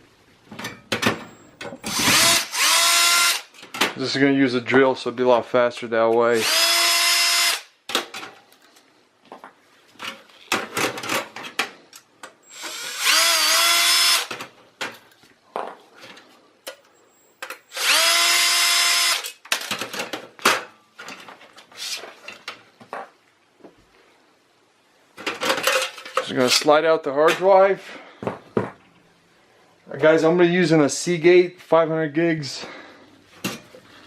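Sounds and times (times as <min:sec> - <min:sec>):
power drill whining: 0:01.8 - 0:03.5, 0:06.4 - 0:07.7, 0:12.4 - 0:14.3, 0:17.7 - 0:19.3.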